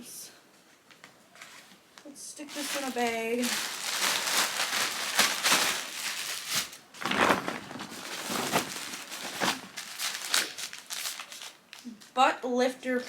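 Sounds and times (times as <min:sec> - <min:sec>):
plastic bag crinkling: 0:02.4 - 0:12.1.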